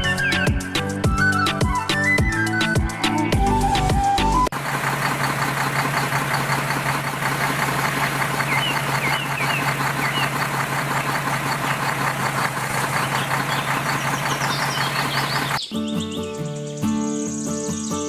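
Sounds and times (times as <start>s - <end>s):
engine idling: 0.0s - 15.7s
bird chirps: 5.3s - 18.0s.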